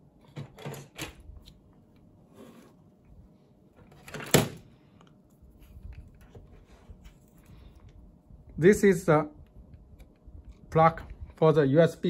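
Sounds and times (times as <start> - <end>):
soft handling rustle: 4.9 - 8.4.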